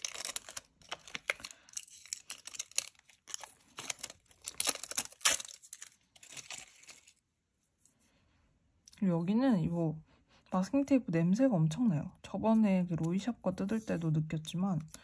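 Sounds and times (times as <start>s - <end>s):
masking tape crinkling and tearing: 0.0s - 7.2s.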